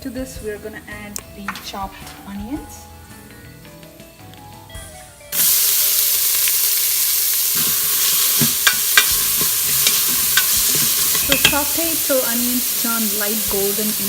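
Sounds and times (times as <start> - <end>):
onions sizzling in hot oil: 5.3 - 14.0
spoon clinking against pot: 7.6 - 11.8.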